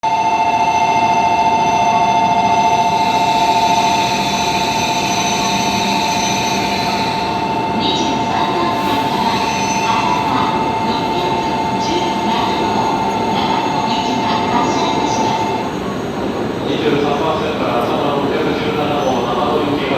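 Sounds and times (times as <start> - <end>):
platform departure bell: 0.0 - 19.9
faint announcement voice: 6.9 - 19.9.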